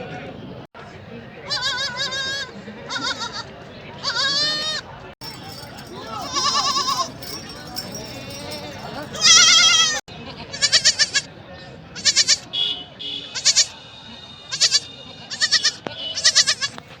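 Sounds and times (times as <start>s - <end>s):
baby goats bleating: 1.5s - 11.2s, 14.5s - 16.8s.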